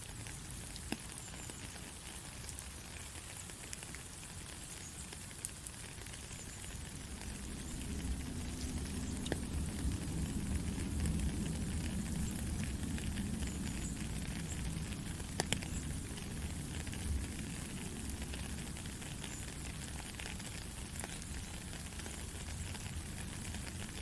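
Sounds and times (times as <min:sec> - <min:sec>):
heavy rain falling: 0:05.2 - 0:24.0.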